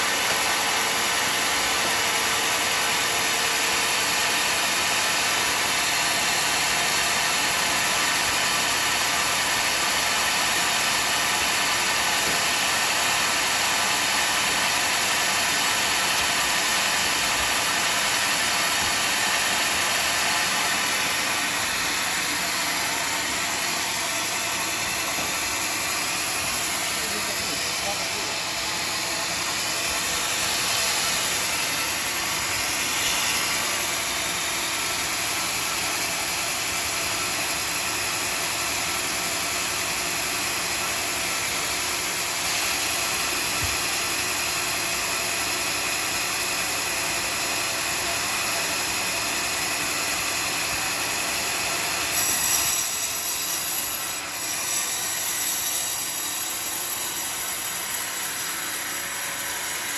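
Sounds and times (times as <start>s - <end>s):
sawmill sawing a log: 0.0s - 59.9s.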